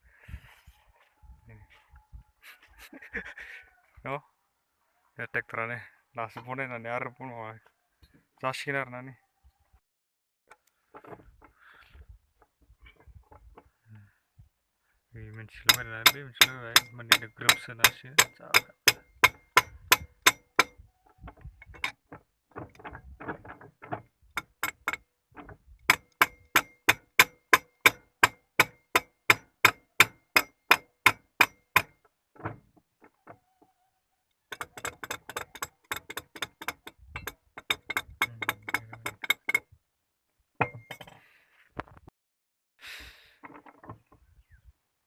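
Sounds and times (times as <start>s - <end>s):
hammer striking metal: 15.7s - 20.7s, 25.9s - 32.0s.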